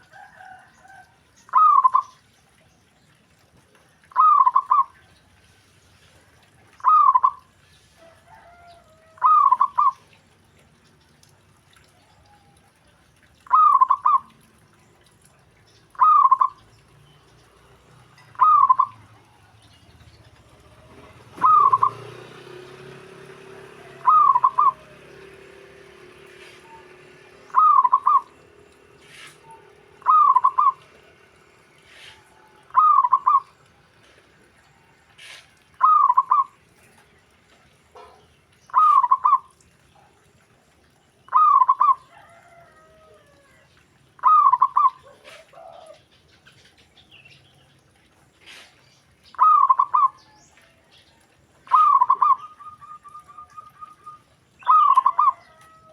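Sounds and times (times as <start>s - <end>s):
zebra dove cooing: 0.3s - 2.1s, 4.1s - 4.9s, 6.8s - 7.5s, 8.3s - 10.0s, 16.0s - 16.6s, 18.3s - 19.6s, 20.7s - 22.2s, 23.7s - 25.1s, 26.4s - 28.4s, 29.0s - 31.2s, 31.9s - 33.6s, 35.2s - 36.6s, 38.7s - 39.5s, 41.3s - 43.6s, 44.2s - 46.0s, 49.4s - 50.2s, 51.7s - 55.9s.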